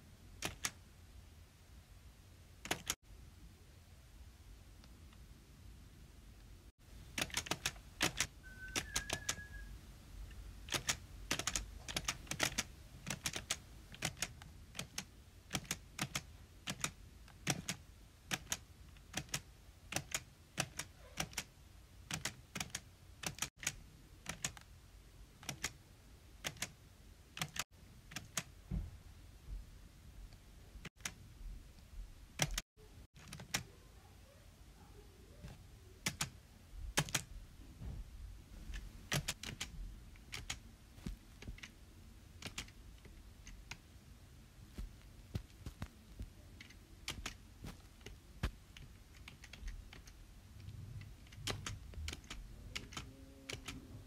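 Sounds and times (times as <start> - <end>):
sharp clicks: 2.6 - 3.0, 38.7 - 40.6
brief squeak: 8.4 - 9.8.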